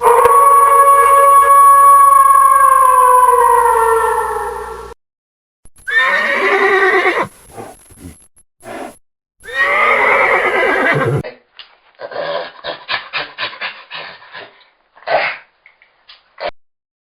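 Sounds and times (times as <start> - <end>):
horse whinnying: 5.9 - 11.2
short rough animal calls: 6.0 - 11.2.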